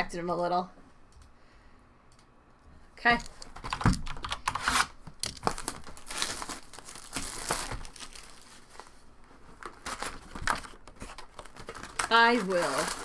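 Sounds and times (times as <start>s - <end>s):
wrappers torn and crinkled: 4.6s - 9.0s, 9.6s - 13.0s.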